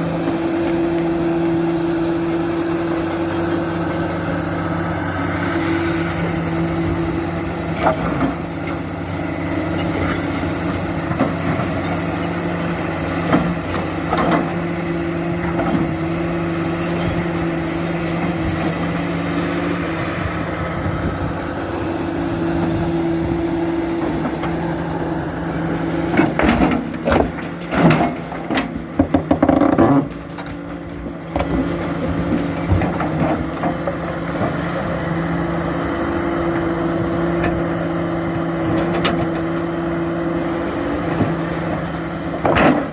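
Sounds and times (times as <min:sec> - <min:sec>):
excavator diesel engine running: 0:00.0 - 0:42.9
loud knocks and clatter: 0:26.1 - 0:30.1.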